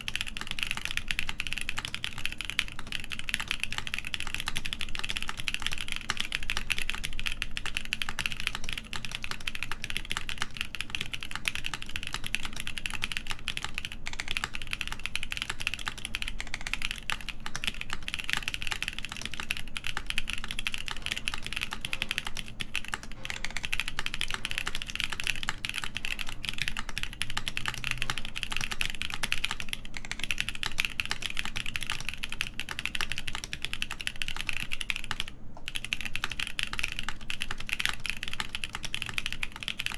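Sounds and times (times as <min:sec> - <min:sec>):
fast typing on mechanical keyboard: 0:00.0 - 0:39.9.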